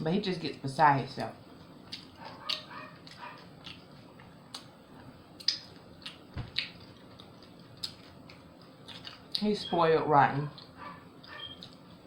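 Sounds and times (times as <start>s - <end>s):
mouth clicks and chewing: 1.9s - 4.7s, 5.4s - 9.5s.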